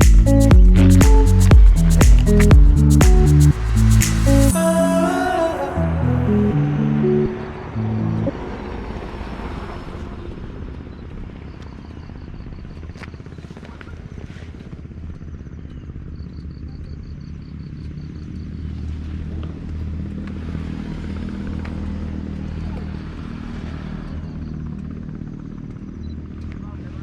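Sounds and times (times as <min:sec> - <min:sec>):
motorcycle engine running: 0:00.0 - 0:04.5.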